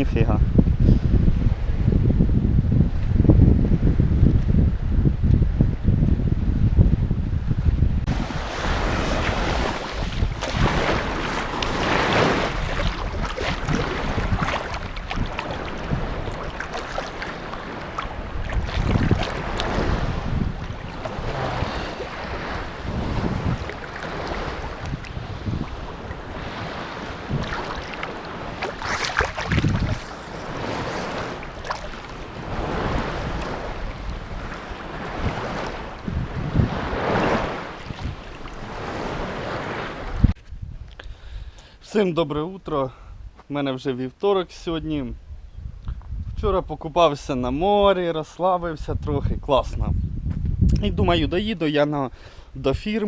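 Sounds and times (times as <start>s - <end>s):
wind buffeting the microphone: 0.0s - 41.6s, 44.7s - 53.0s
sea waves washing ashore: 8.0s - 40.4s.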